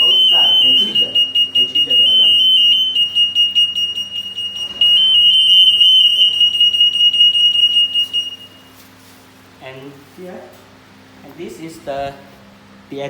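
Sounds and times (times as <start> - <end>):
shrill anti-theft alarm tone: 0.0 - 8.8.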